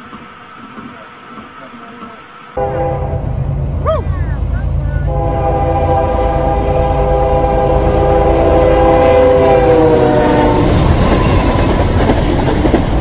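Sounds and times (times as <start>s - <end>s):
train rumbling and clattering: 0.0s - 13.0s
locomotive air horn: 2.6s - 3.4s, 5.0s - 10.8s.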